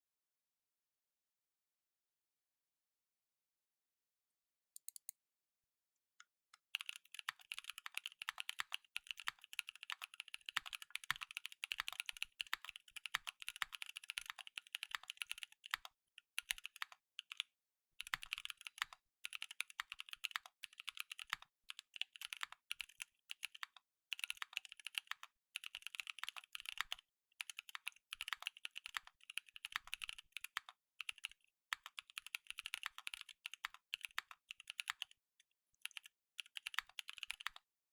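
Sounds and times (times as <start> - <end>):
mechanical keyboard typing: 6.7 - 17.4, 18.0 - 35.1, 35.8 - 37.6.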